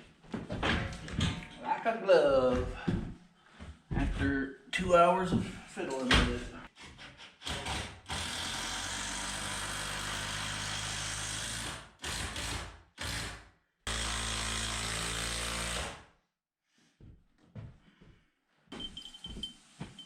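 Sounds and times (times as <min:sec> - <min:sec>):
power drill driving screws: 0:07.5 - 0:16.0.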